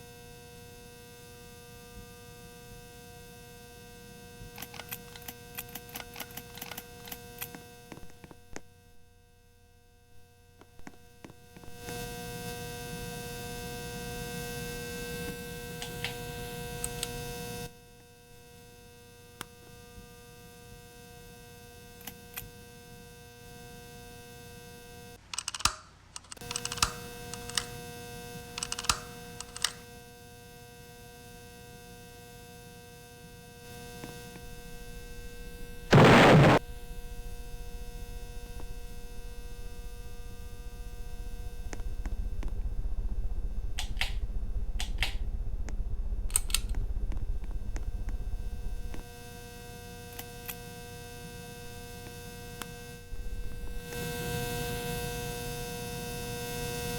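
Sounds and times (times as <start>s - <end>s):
fan clicks and ticks: 4.6s - 7.6s, 25.3s - 27.8s, 28.6s - 29.8s, 43.8s - 48.2s.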